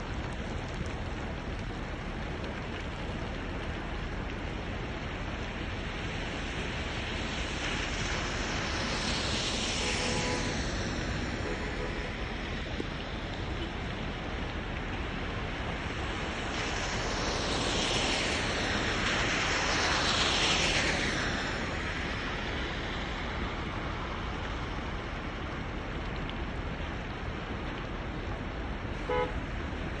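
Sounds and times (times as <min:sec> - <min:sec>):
rain hissing: 0:00.0 - 0:30.0
vehicle passing on wet road: 0:00.0 - 0:30.0.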